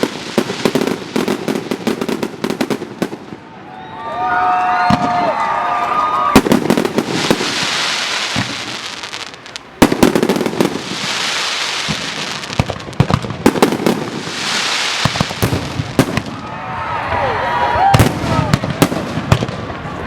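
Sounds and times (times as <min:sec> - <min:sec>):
fireworks high hiss: 0:00.0 - 0:03.2, 0:06.4 - 0:16.4
fireworks bangs: 0:00.0 - 0:20.0.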